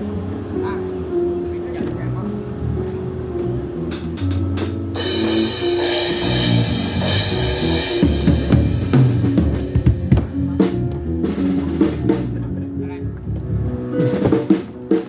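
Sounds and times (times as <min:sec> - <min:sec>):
bass notes: 0:00.0 - 0:15.0
drum hits: 0:03.9 - 0:12.4.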